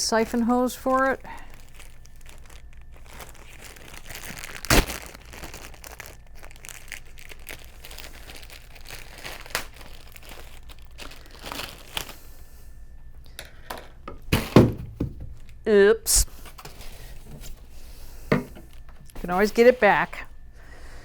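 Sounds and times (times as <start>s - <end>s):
packaging crinkling and rustling: 0.0s - 12.5s, 16.4s - 20.4s.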